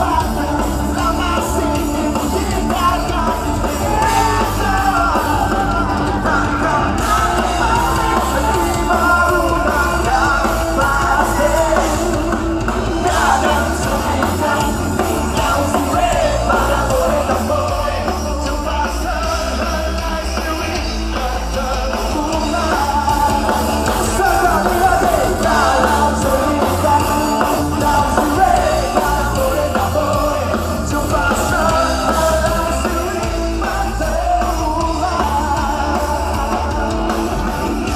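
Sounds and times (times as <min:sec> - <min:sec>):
live band playing: 0:00.0 - 0:37.9
person singing: 0:00.0 - 0:37.9.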